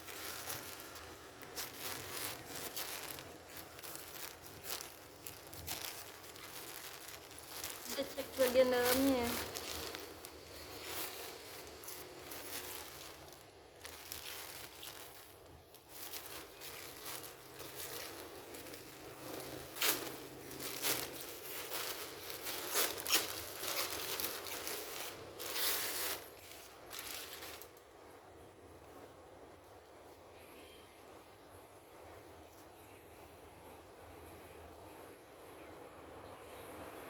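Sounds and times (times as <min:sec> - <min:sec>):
packaging rustling and crinkling: 0:00.0 - 0:28.0.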